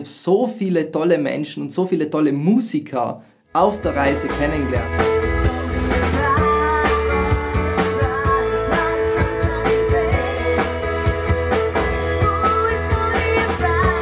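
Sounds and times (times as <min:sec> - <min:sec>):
rock band music: 0:03.6 - 0:14.0
steady drum beat: 0:03.8 - 0:14.0.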